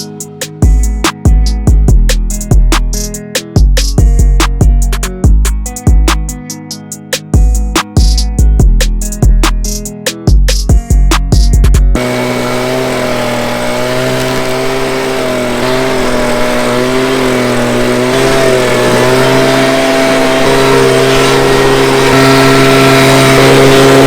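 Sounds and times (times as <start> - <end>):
vehicle engine humming: 11.4 - 24.0.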